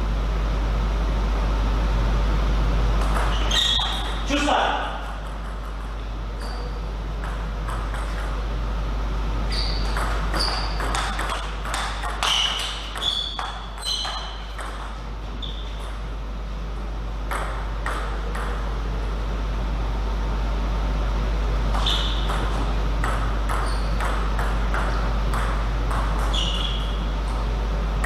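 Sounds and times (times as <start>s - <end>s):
steady low hum: 0.0s - 28.0s
table tennis ball hits: 3.0s - 8.4s, 9.6s - 15.0s, 17.3s - 18.7s, 21.7s - 27.4s.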